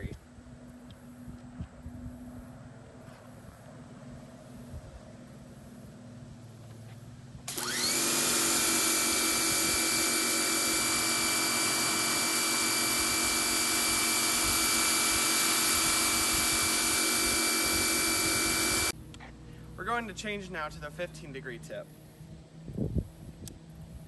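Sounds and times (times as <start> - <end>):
pressure washer motor whining: 7.5 - 19.0.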